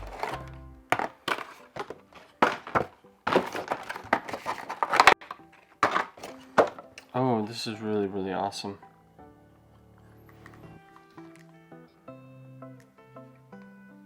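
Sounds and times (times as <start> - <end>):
cardboard packaging knocks and crackles: 0.0 - 6.9.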